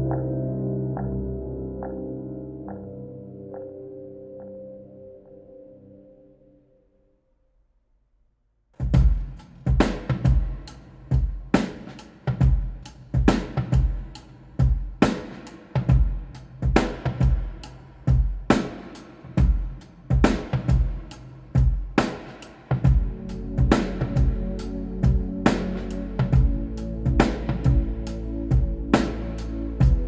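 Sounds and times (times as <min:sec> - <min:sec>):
drum kit beat with cymbals: 0:08.8 - 0:30.0.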